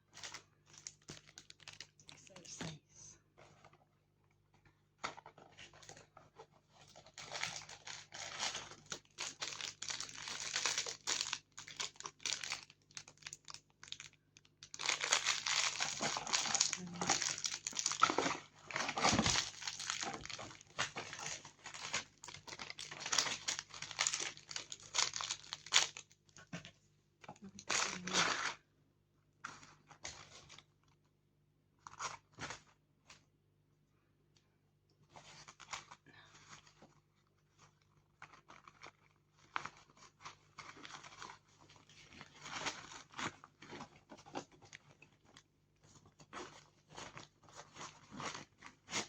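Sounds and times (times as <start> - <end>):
packaging crinkling and rustling: 0.1 - 2.5, 5.0 - 26.4, 27.5 - 28.6, 35.2 - 49.0.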